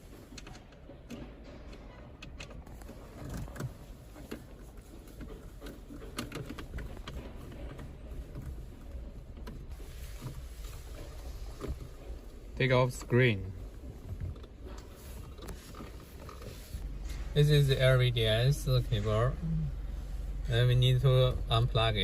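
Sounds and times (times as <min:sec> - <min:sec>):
clicks and knocks of parts handled: 0:00.0 - 0:12.0
low steady rumble: 0:02.7 - 0:22.0.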